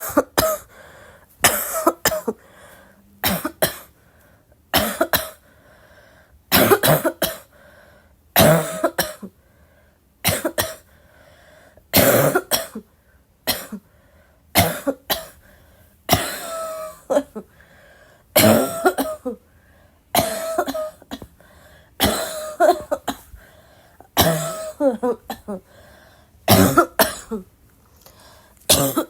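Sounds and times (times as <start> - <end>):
person coughing: 0.0 - 0.8, 1.4 - 2.5, 3.2 - 3.9, 4.7 - 5.4, 6.5 - 7.5, 8.4 - 9.3, 10.2 - 10.8, 12.0 - 12.9, 13.5 - 13.8, 14.6 - 15.4, 16.1 - 17.5, 18.4 - 19.4, 20.2 - 21.3, 22.0 - 23.4, 24.1 - 25.7, 26.5 - 27.5, 28.7 - 29.0.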